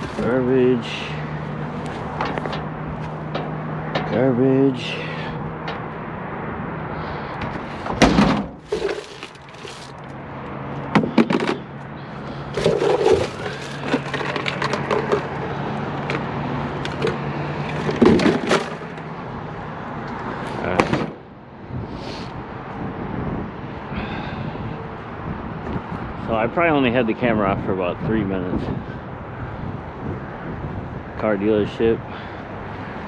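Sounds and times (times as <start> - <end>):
plastic bags rattling and crinkling: 0.0 - 0.3, 8.6 - 10.0, 12.5 - 15.3, 17.7 - 18.9.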